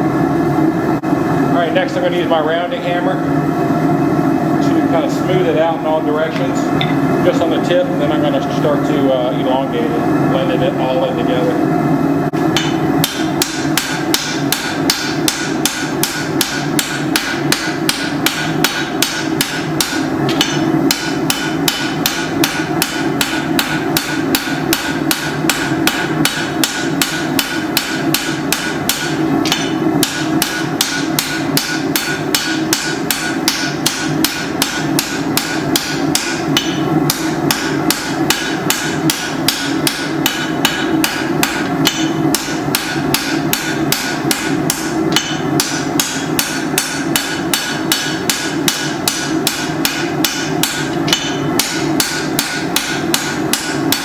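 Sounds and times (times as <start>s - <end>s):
hammer striking steel on anvil: 12.6s - 54.0s.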